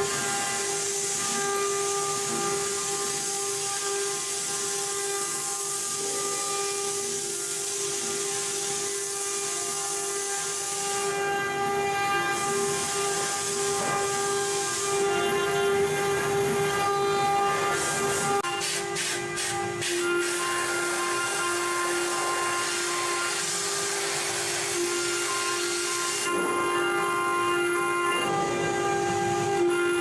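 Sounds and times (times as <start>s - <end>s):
router spindle whine: 19.6s - 30.0s.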